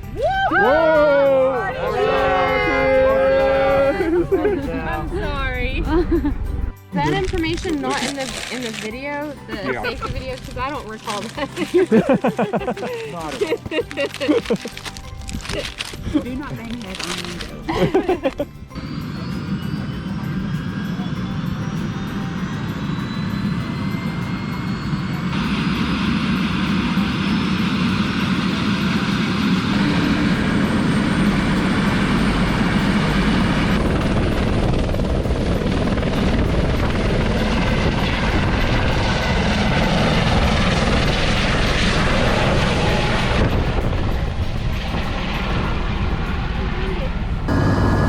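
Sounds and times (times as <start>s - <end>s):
helicopter turbine and rotor: 0.0s - 48.0s.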